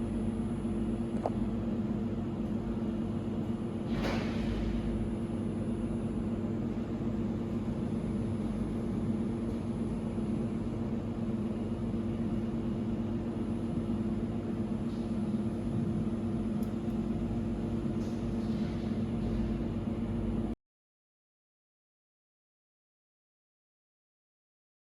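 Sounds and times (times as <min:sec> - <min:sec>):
welding machine hum: 0:04.5 - 0:20.5.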